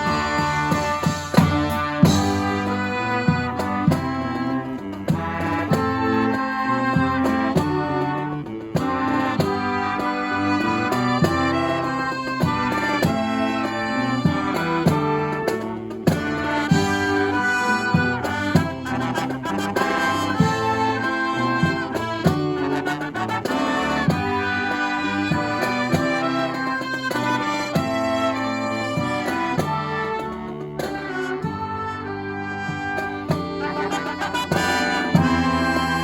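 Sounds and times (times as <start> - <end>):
brass band playing: 0.0 - 36.0
drum hits: 34.4 - 36.0.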